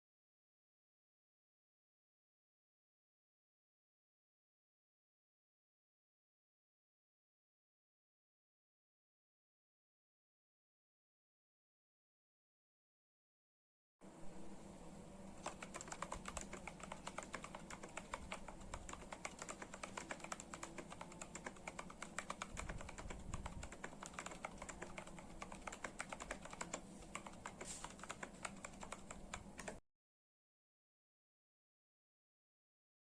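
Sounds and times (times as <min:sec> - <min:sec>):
mechanical keyboard typing: 0:15.4 - 0:29.8.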